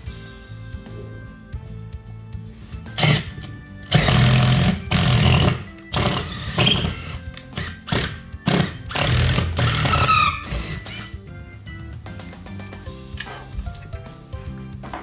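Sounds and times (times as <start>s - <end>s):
background music: 0.0s - 15.0s
power tool running in bursts: 3.0s - 11.2s.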